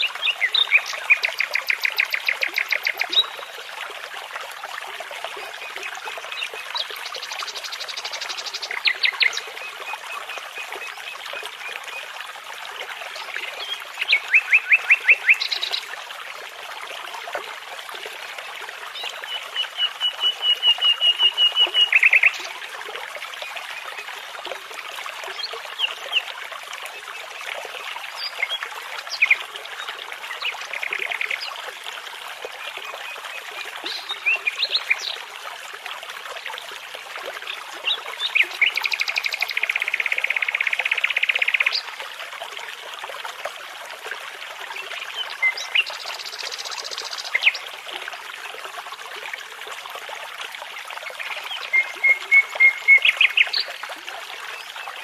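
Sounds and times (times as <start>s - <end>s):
songbirds singing and chirping: 0.0s - 3.5s
babbling brook: 0.0s - 55.0s.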